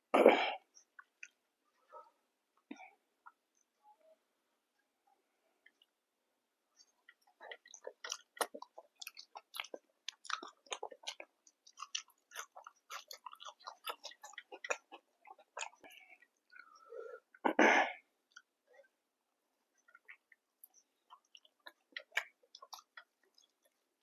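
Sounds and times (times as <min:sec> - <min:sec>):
chewing food with mouth clicks: 0:00.8 - 0:01.8, 0:05.6 - 0:06.0, 0:06.8 - 0:17.4, 0:18.2 - 0:18.6, 0:19.7 - 0:24.0.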